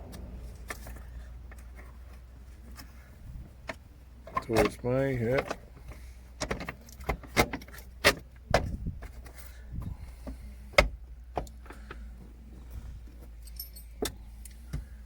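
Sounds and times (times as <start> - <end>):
low steady hum: 0.0 - 15.0
clicks and knocks of parts and tools: 3.6 - 9.4, 10.2 - 12.1, 13.1 - 15.0.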